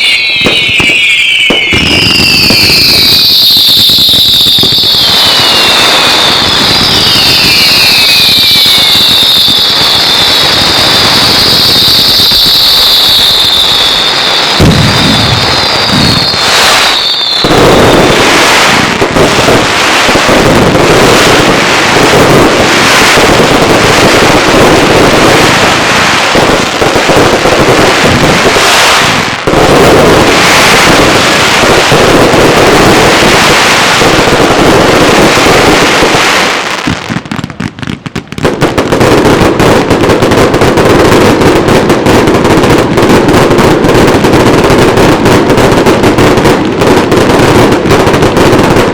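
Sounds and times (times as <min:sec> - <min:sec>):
falling firework whistle: 0:00.0 - 0:38.6
fireworks bangs and crackle: 0:00.0 - 0:48.9.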